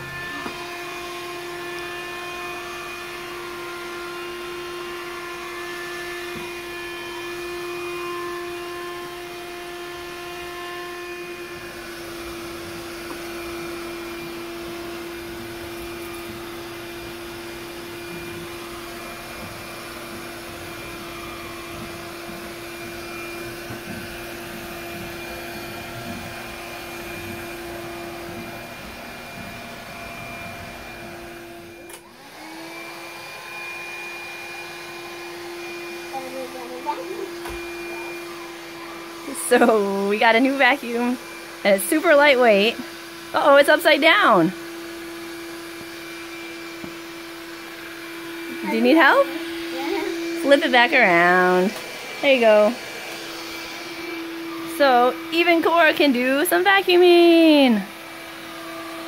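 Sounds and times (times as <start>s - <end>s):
cordless vacuum running: 0.0s - 59.0s.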